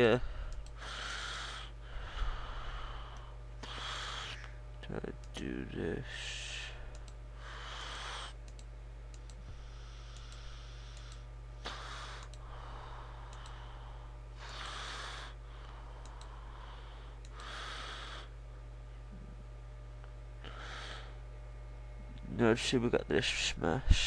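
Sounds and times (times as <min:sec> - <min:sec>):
low electrical hum: 0:00.0 - 0:24.0
computer mouse clicks: 0:00.5 - 0:00.8, 0:06.9 - 0:07.2, 0:08.4 - 0:09.4, 0:10.1 - 0:11.2, 0:12.2 - 0:12.4, 0:13.3 - 0:13.6, 0:16.0 - 0:16.3, 0:17.2 - 0:17.5.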